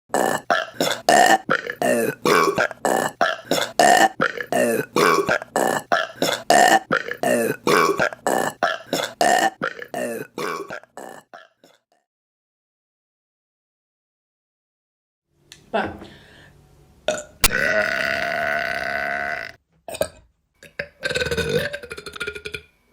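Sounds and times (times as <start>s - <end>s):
woman burping: 0.1s - 11.8s, 17.1s - 22.6s.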